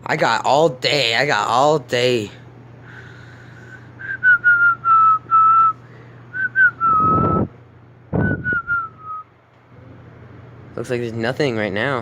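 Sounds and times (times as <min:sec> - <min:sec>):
person whistling a tune: 0:04.0 - 0:07.5, 0:08.2 - 0:09.3.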